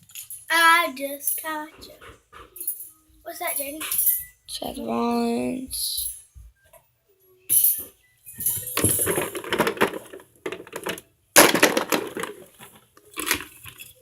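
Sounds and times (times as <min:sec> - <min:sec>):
rustling and clattering objects: 0:01.2 - 0:04.7, 0:07.5 - 0:14.0.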